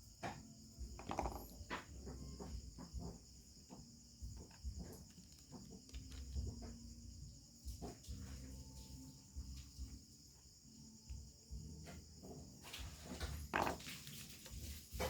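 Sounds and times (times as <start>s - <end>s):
crickets chirring: 0.0s - 15.0s.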